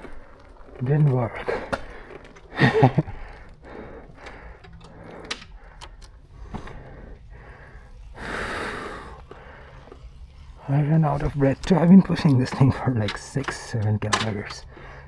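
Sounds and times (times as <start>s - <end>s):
man breathing hard: 1.4s - 10.3s, 14.6s - 15.0s.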